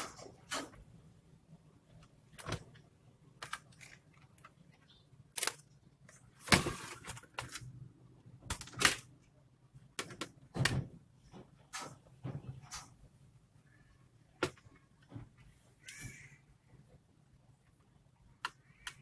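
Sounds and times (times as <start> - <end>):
plastic clicks of laptop parts: 18.4 - 19.0.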